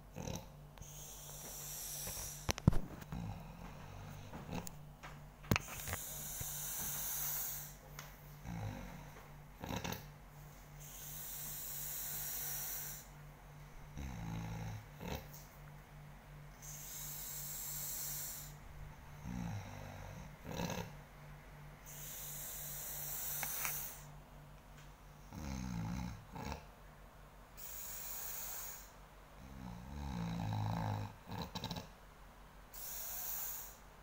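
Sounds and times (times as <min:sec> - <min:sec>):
person snoring: 0:00.1 - 0:04.8, 0:05.8 - 0:07.8, 0:08.4 - 0:10.1, 0:10.8 - 0:13.1, 0:14.0 - 0:15.4, 0:16.6 - 0:18.6, 0:19.2 - 0:21.0, 0:21.9 - 0:24.1, 0:25.3 - 0:26.7, 0:27.6 - 0:31.9, 0:32.8 - 0:33.8
hissing breath: 0:00.8 - 0:02.6, 0:05.8 - 0:07.8, 0:10.8 - 0:13.2, 0:16.6 - 0:18.6, 0:21.8 - 0:24.1, 0:27.6 - 0:29.0, 0:32.8 - 0:33.9.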